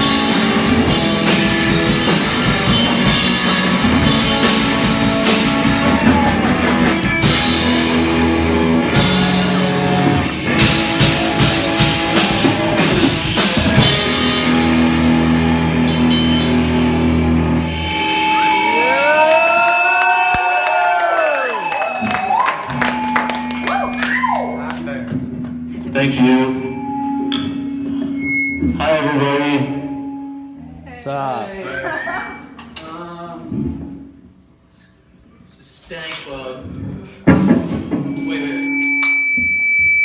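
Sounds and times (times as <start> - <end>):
live rock band playing: 0.0 - 19.7, 21.6 - 30.8.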